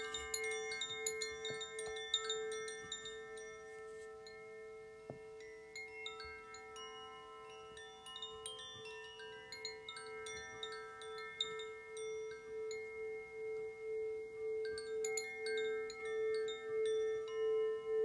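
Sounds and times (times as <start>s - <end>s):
tuned chimes struck: 0.0s - 13.2s
singing bowl ringing: 0.0s - 18.0s.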